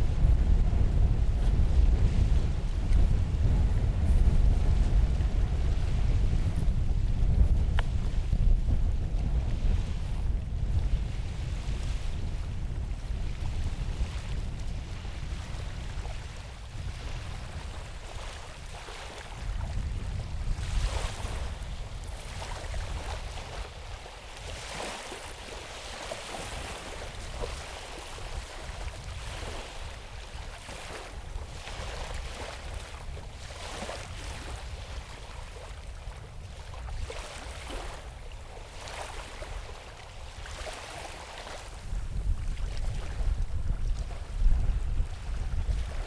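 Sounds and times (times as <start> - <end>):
small waves washing ashore: 0.0 - 46.0
wind buffeting microphone: 0.0 - 46.0.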